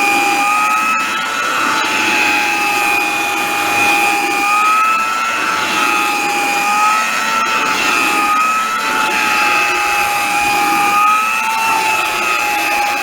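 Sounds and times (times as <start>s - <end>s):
hand vacuum cleaner running: 0.0s - 13.0s.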